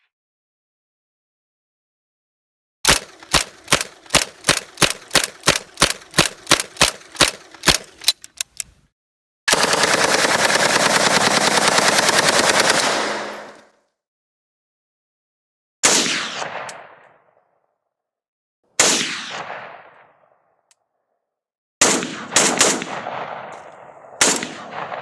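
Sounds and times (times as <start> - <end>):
automatic gunfire burst: 2.9 - 8.6, 9.5 - 13.6
gunshots: 2.9 - 8.6, 18.8 - 20.0, 21.8 - 25.0.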